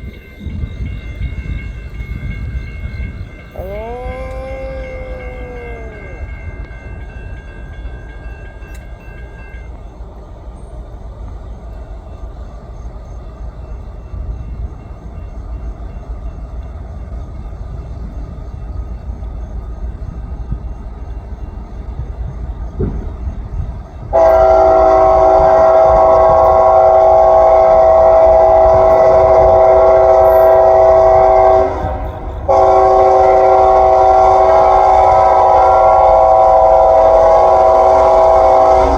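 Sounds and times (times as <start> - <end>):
freight train rumbling: 0.0 - 38.9
locomotive horn chord: 24.2 - 38.9.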